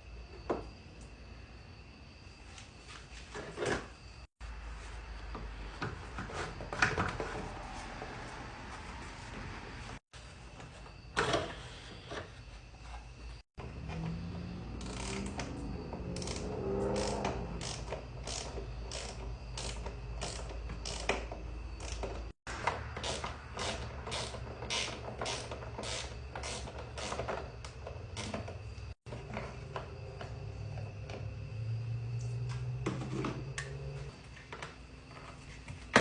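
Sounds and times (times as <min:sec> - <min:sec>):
ratchet wrench clicking: 0:14.8 - 0:15.4, 0:16.2 - 0:21.2.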